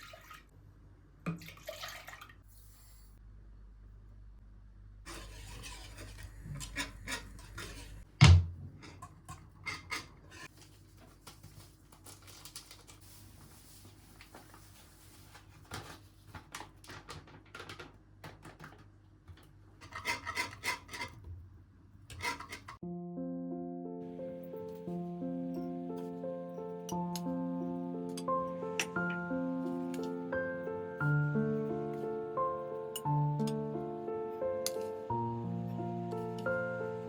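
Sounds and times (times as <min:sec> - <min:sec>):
rubbing and scraping in kitchen: 0:05.0 - 0:22.8
background music: 0:22.8 - 0:37.0.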